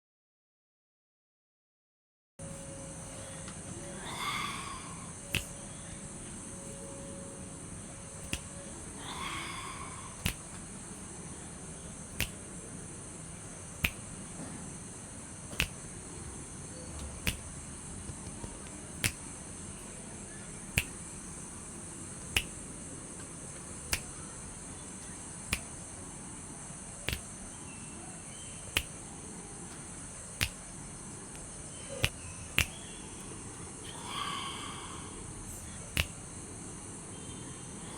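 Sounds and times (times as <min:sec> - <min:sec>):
insect chorus: 0:02.4 - 0:37.9
sharp click: 0:05.3 - 0:05.6, 0:08.2 - 0:08.6, 0:10.2 - 0:10.6, 0:12.2 - 0:12.5, 0:13.8 - 0:14.2, 0:15.5 - 0:15.9, 0:17.0 - 0:17.5, 0:19.0 - 0:19.3, 0:20.7 - 0:21.1, 0:22.3 - 0:22.6, 0:23.9 - 0:24.3, 0:27.0 - 0:27.4, 0:28.7 - 0:29.0, 0:30.4 - 0:30.7, 0:31.3 - 0:32.9, 0:35.9 - 0:36.3.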